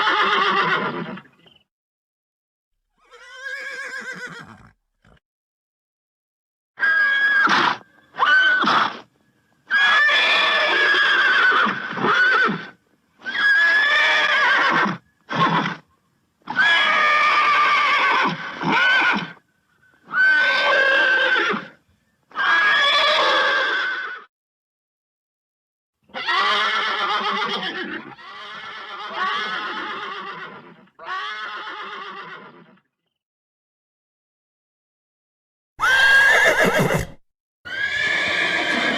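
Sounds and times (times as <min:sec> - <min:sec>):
horse neighing: 0:00.0 - 0:01.3, 0:03.0 - 0:05.2, 0:35.8 - 0:38.9.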